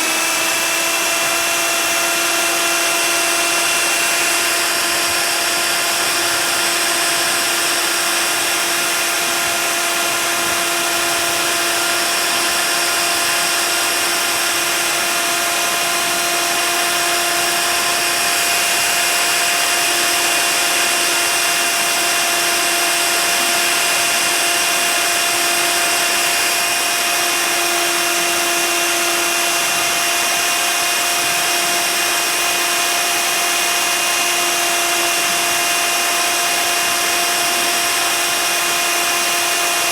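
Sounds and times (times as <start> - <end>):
router spindle whine: 0.0 - 39.9.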